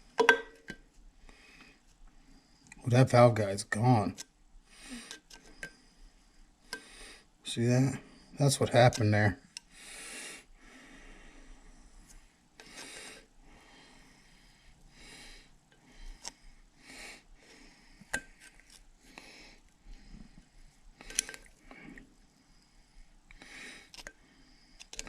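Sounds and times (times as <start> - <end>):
person breathing close to microphone: 9.7 - 25.0.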